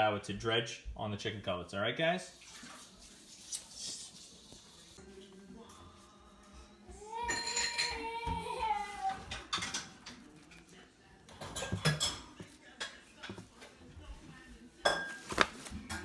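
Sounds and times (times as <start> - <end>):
dishes and utensils clattering: 7.1 - 16.0.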